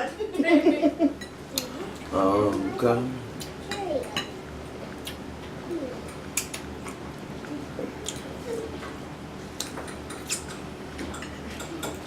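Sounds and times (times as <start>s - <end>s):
soft wet chewing: 4.6s - 10.6s
cutlery clicking on dishes: 9.6s - 12.0s.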